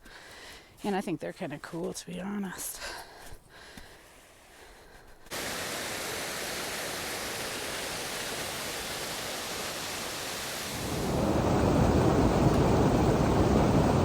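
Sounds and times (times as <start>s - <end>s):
steady rushing noise: 10.5s - 14.0s.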